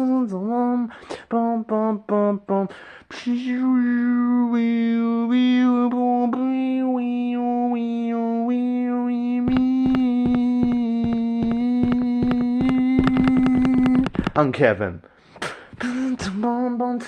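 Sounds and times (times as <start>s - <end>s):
person singing a steady note: 5.3s - 14.1s
fast clicking percussion beat: 9.5s - 14.4s.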